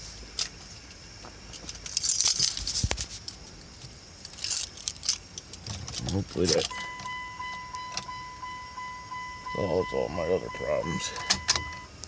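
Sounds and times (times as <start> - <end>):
metallic jingling: 1.8 - 3.4, 4.2 - 6.8.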